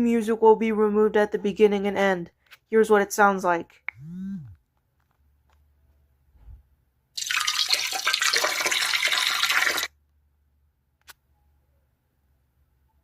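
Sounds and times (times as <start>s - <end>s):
liquid stream splashing into toilet: 7.2s - 9.9s.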